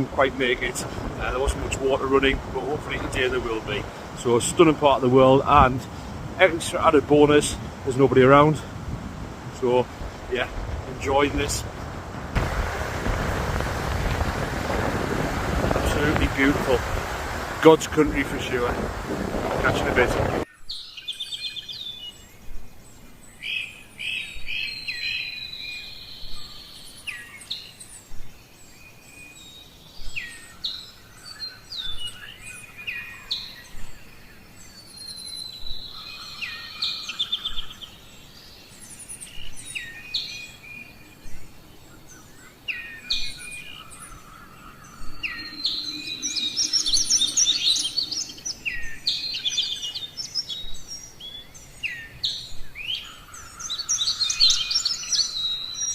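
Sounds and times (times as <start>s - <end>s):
birds chirping and whistling: 19.6s - 55.9s.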